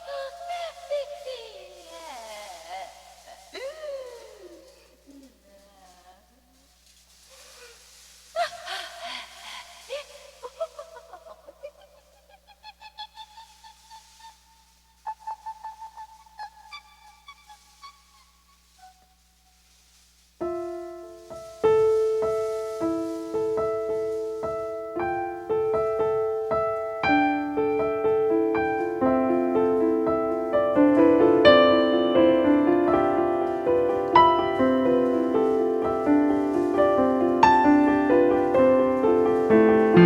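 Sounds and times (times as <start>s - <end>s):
piano notes: 20.4s - 40.0s.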